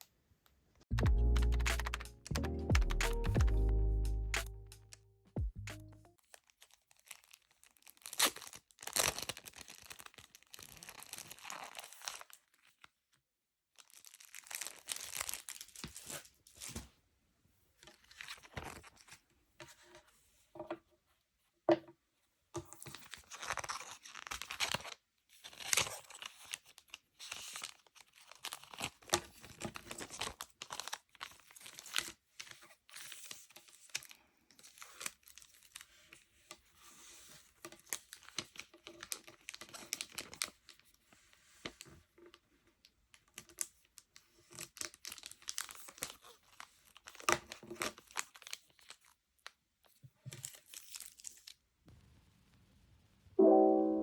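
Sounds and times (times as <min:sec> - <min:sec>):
packaging crinkling and tearing: 0:06.2 - 0:12.9, 0:13.8 - 0:16.8, 0:18.1 - 0:19.2, 0:22.8 - 0:35.8, 0:37.8 - 0:40.9, 0:44.5 - 0:49.2, 0:50.4 - 0:51.6.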